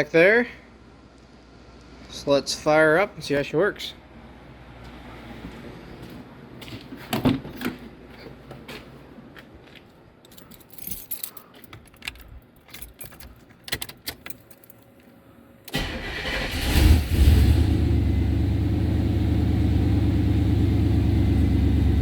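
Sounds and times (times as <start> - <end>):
keys jangling: 10.2 - 15.0.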